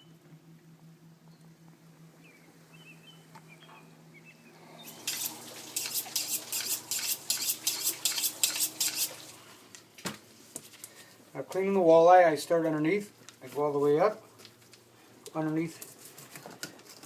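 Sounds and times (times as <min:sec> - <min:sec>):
faint steady hum: 0:00.0 - 0:17.0
knife scraping: 0:04.9 - 0:09.3.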